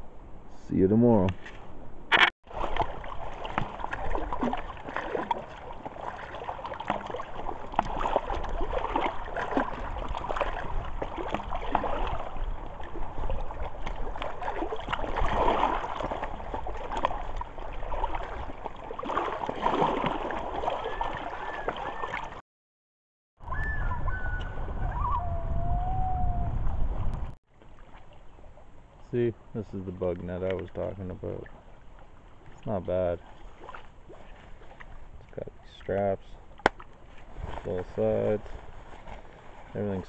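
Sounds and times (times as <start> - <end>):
water lapping against shore: 1.0 - 22.4, 23.6 - 40.0
wind rumbling on microphone: 7.4 - 18.8, 23.4 - 27.4, 37.2 - 37.8.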